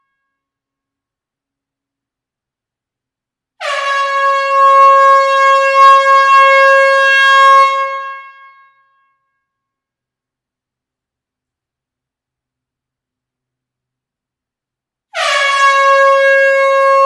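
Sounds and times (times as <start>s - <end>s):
air horn blast: 3.6s - 8.7s, 15.1s - 17.0s.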